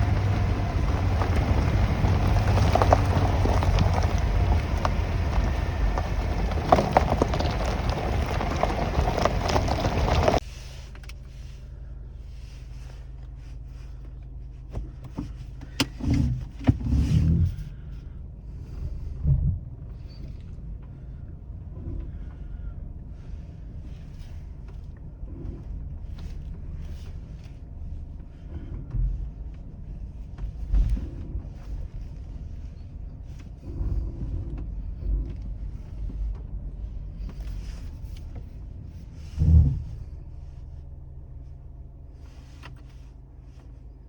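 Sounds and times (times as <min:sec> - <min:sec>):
thumps and knocks from car: 0:00.0 - 0:10.4, 0:39.3 - 0:40.1
car engine running at low revs: 0:00.0 - 0:44.0.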